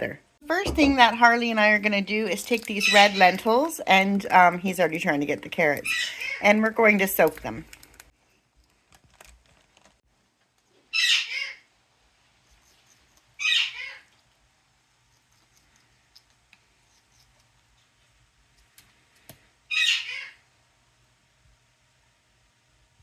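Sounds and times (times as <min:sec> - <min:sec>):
parrot squawking: 0:02.8 - 0:03.4, 0:05.8 - 0:06.5, 0:10.9 - 0:11.7, 0:13.4 - 0:14.1, 0:19.7 - 0:20.4.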